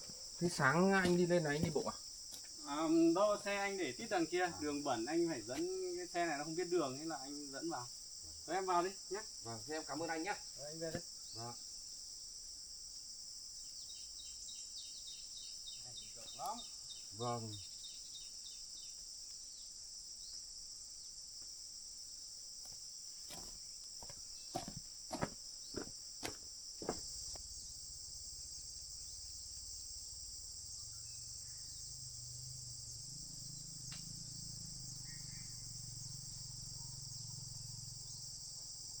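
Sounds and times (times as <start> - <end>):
insects trilling: 0.0 - 39.0.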